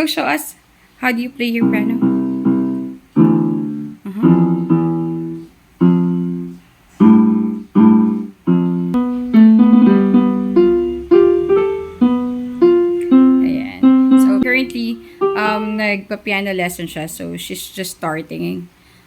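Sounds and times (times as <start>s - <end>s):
electronic keyboard chords: 1.6s - 15.8s
keyboard single notes rising: 1.6s - 15.8s.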